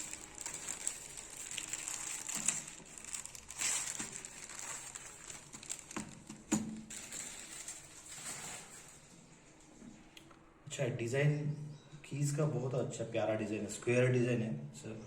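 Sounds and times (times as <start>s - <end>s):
paper and plastic crinkling: 0.0s - 9.7s.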